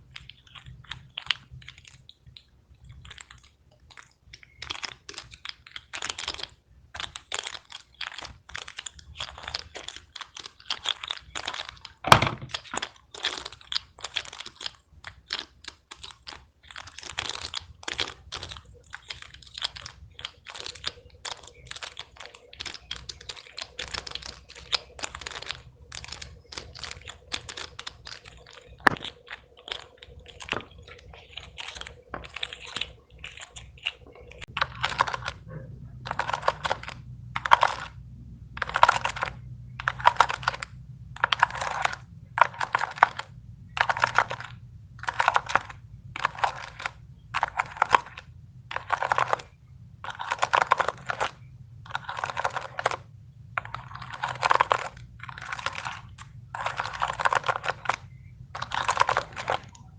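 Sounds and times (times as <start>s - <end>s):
plastic fidget toys clicking: 0.0s - 59.9s.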